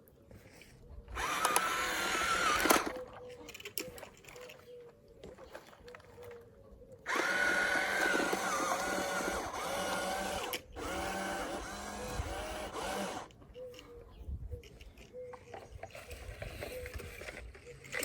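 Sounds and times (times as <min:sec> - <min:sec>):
small electric motor whining: 0:01.1 - 0:03.0, 0:07.1 - 0:13.3.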